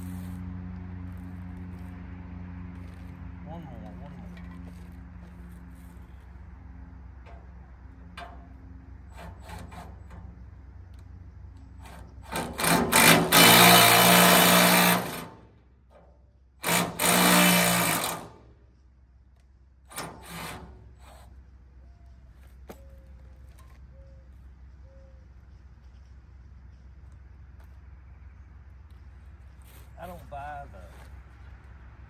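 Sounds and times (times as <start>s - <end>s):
power drill running: 11.8s - 15.4s, 16.6s - 18.4s.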